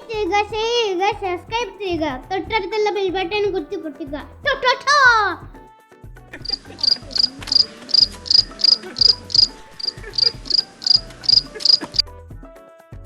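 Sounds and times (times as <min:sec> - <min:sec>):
quiet music with low beat: 0:00.0 - 0:12.6
insect chirping: 0:06.4 - 0:12.0.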